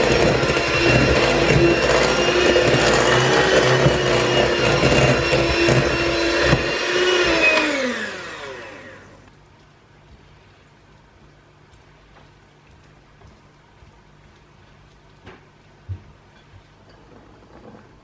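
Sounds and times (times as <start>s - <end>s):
electric kitchen mixer running: 0.0s - 9.3s
mixer motor winding down: 0.0s - 9.3s.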